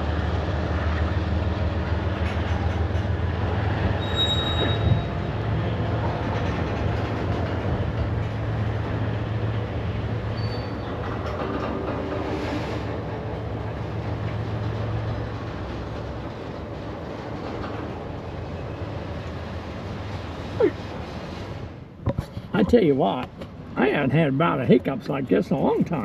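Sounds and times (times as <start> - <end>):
diesel locomotive engine drone: 0.0 - 26.0
steel wheels squealing: 3.9 - 5.4, 10.2 - 13.0.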